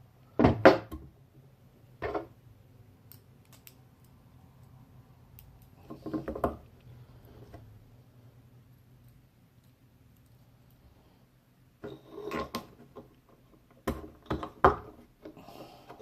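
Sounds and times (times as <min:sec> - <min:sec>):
clicks and knocks of small tools: 0:03.1 - 0:06.5.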